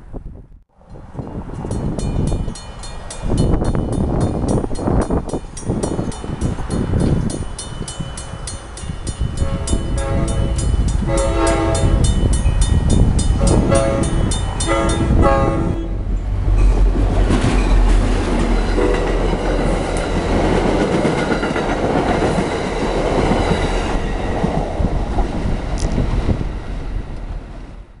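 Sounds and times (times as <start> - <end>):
train passing rumble: 0.0 - 28.0
railroad crossing bell ringing: 0.8 - 16.8
train horn blasts: 9.3 - 12.2, 13.4 - 16.1, 18.8 - 19.2.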